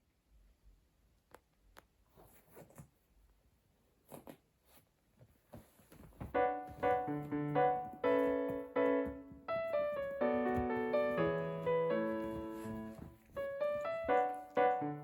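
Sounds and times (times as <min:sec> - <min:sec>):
piano background music: 0:06.3 - 0:15.0.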